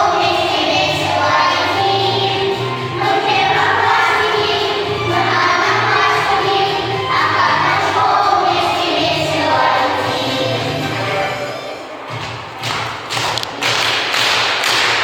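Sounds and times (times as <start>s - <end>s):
children singing: 0.0s - 11.9s.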